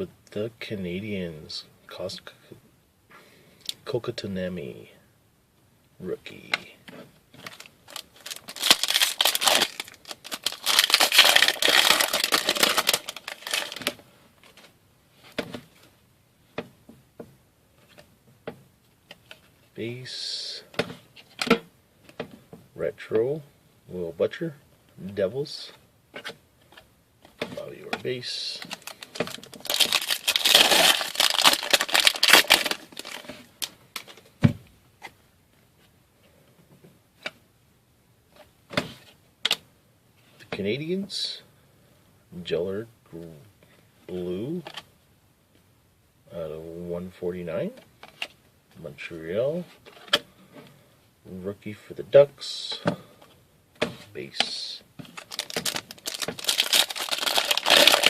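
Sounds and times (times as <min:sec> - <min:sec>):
wrapper tearing and crinkling: 0:07.4 - 0:14.0, 0:28.6 - 0:34.1, 0:55.1 - 0:58.0.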